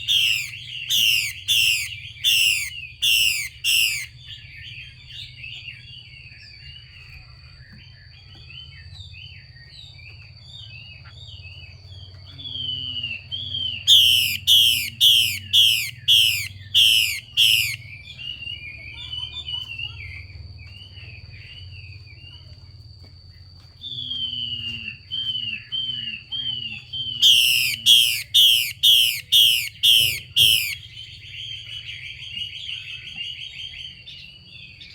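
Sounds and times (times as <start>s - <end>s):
bird harsh call: 0.0s - 4.1s, 13.9s - 17.8s, 27.2s - 30.8s
bird chattering and twittering: 0.0s - 5.6s, 10.9s - 20.2s, 25.3s - 34.2s.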